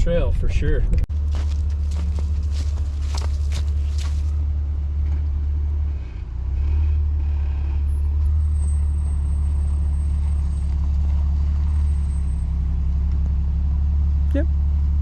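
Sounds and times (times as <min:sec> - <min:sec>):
car engine running: 0:00.0 - 0:07.4
short crackles: 0:01.2 - 0:04.3.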